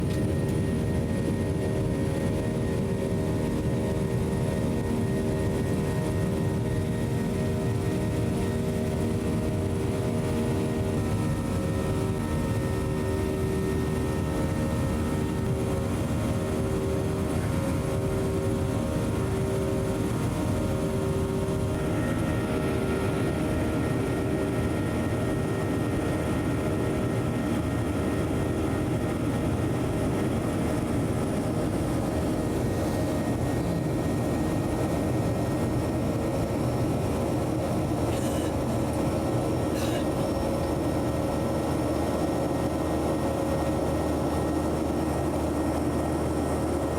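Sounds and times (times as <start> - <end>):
jet engine drone: 0.0 - 46.9
airplane cabin air rush: 39.7 - 40.3.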